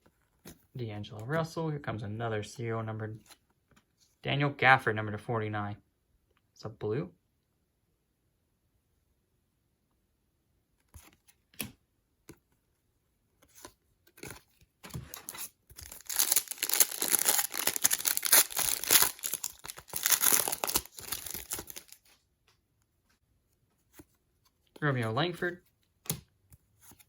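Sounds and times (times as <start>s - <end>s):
card pack wrapper tearing: 15.0s - 22.1s.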